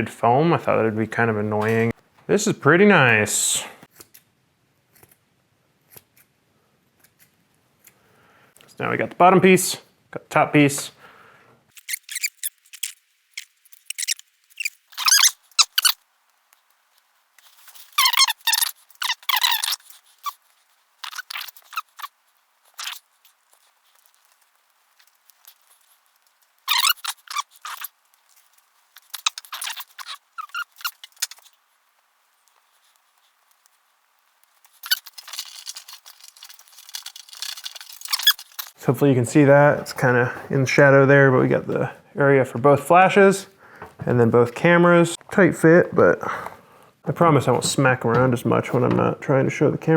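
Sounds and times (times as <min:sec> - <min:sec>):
packing foam squeaking: 0:11.7 - 0:16.1, 0:17.4 - 0:31.7, 0:32.3 - 0:38.8.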